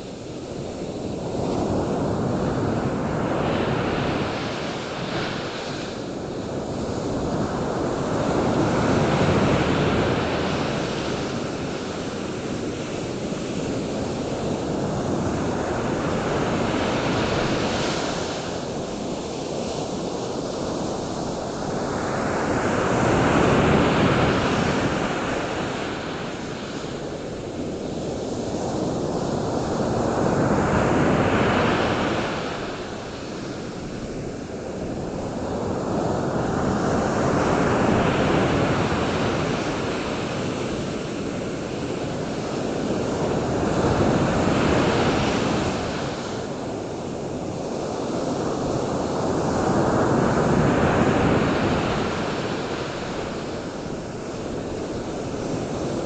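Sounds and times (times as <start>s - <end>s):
ocean waves washing in: 0.0s - 56.0s
wind on microphone: 0.0s - 56.0s.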